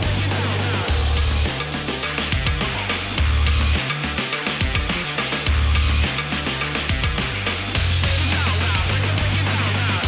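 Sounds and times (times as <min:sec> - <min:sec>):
deep bass note: 0:00.0 - 0:03.8
instrumental music with drum beat: 0:00.0 - 0:10.0.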